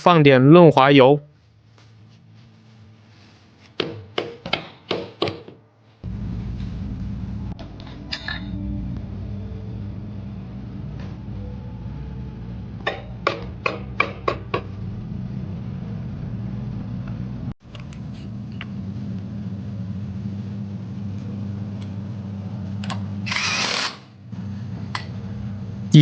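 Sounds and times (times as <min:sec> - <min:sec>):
sharp knocks: 0:03.8 - 0:05.6, 0:12.9 - 0:14.7
low hum: 0:05.6 - 0:26.0.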